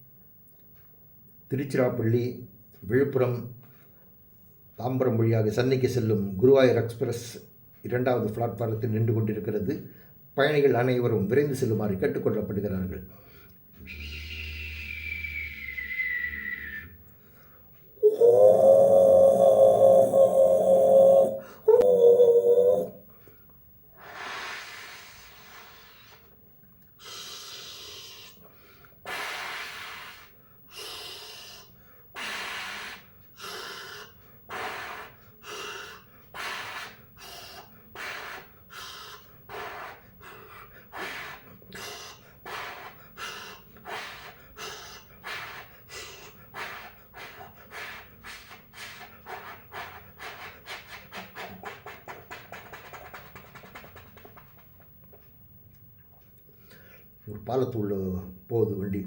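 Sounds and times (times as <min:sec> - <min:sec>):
person imitating steam locomotive: 0:13.8 - 0:16.8, 0:18.0 - 0:23.0, 0:24.0 - 0:26.3, 0:27.0 - 0:28.4, 0:29.0 - 0:54.4.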